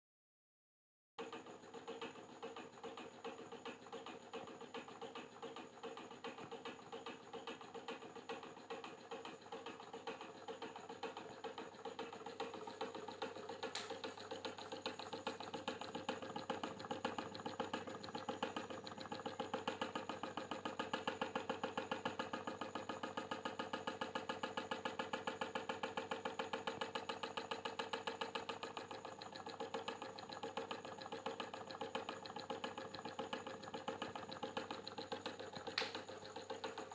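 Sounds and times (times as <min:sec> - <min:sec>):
fast rhythmic pulsing noise: 0:01.2 - 0:36.9
electric fan humming: 0:35.2 - 0:36.9.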